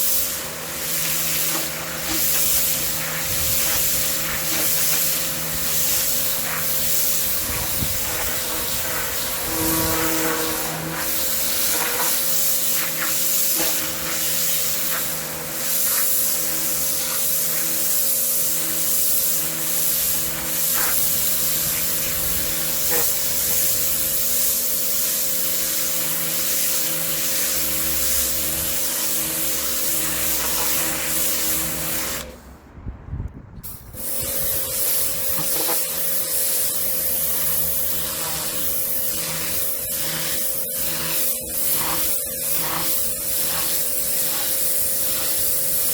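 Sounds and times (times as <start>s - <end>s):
pump motor hum: 0.0s - 32.4s, 34.1s - 45.9s
pressure washer spray hiss: 0.0s - 32.5s, 33.6s - 45.9s.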